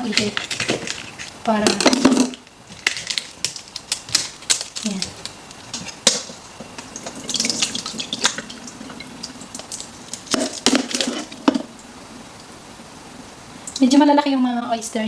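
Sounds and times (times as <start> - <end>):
water dripping and trickling: 4.8 - 12.5, 13.6 - 14.3.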